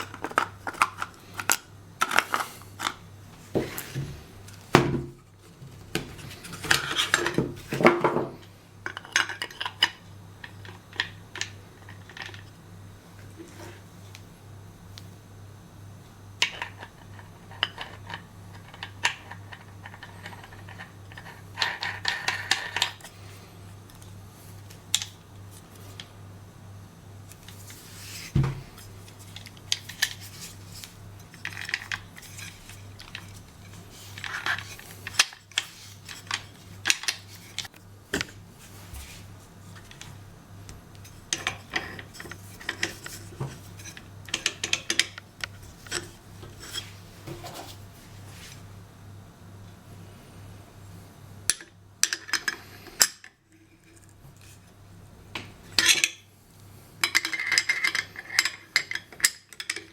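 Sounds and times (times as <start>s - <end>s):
clicks and knocks of handling parts: 23.8s - 26.1s, 27.3s - 38.4s, 39.0s - 47.8s, 51.5s - 54.6s, 55.3s - 56.2s, 57.0s - 59.9s.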